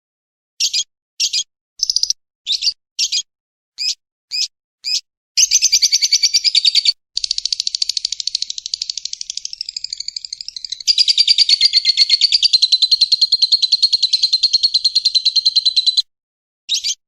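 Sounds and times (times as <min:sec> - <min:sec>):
bird buzzy chirps: 0:00.6 - 0:16.1, 0:16.7 - 0:17.0
bird rapid trills: 0:05.4 - 0:16.0.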